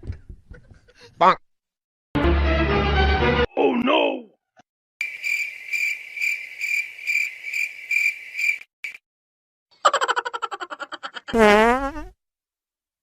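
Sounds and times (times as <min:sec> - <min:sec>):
cricket chirping trill: 0:05.0 - 0:09.0
buzzy fart sound: 0:11.3 - 0:12.2.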